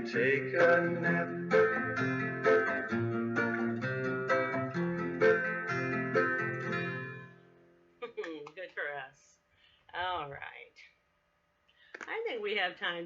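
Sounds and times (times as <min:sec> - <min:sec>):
plucked string instrument chords: 0:00.0 - 0:07.5.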